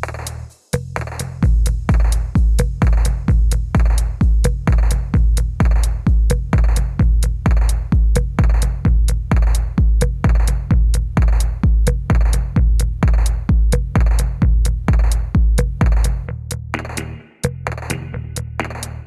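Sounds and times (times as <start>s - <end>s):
booming bass kick drum: 0.0s - 19.0s
ticking hi-hats: 0.0s - 19.0s
electronic music: 16.8s - 19.0s.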